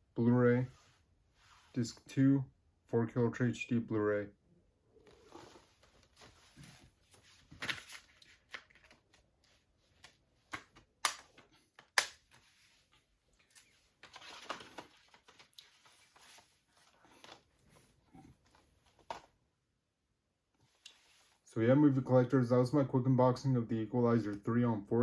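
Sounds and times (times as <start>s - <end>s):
plastic case clicks and snaps: 10.5s - 12.3s.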